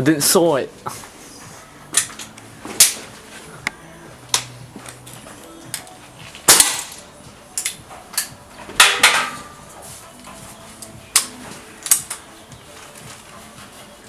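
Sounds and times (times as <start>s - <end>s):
sharp impacts: 6.4s - 9.6s.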